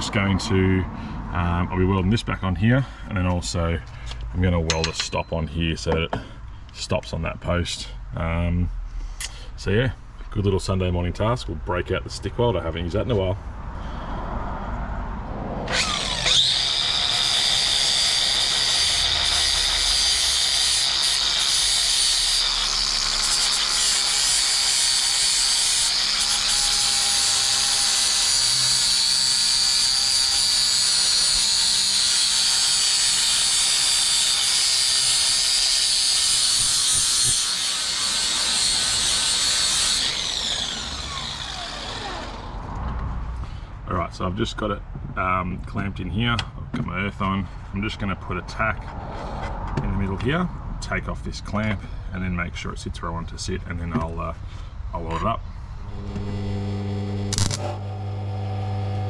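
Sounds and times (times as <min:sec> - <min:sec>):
angle grinder grinding metal: 0:15.7 - 0:42.6, 0:55.9 - 0:58.2.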